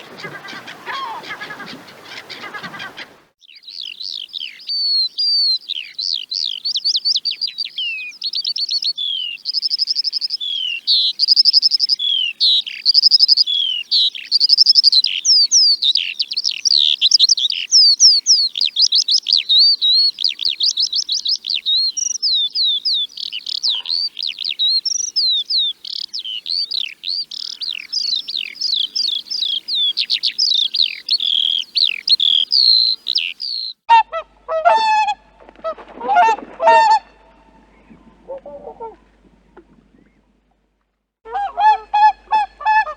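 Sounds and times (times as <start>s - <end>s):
harsh bird call: 0.0s - 4.7s
songbird singing: 0.0s - 34.5s, 35.4s - 42.9s.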